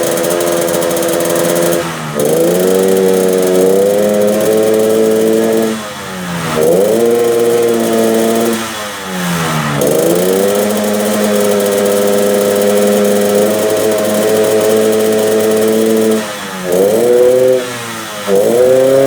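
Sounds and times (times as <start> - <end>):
motorcycle engine revving: 0.0 - 19.0.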